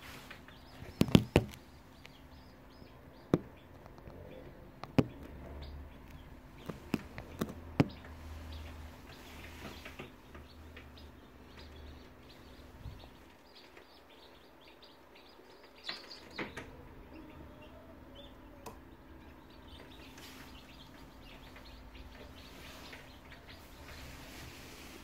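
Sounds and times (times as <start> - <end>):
chicks peeping: 0.0 - 25.0.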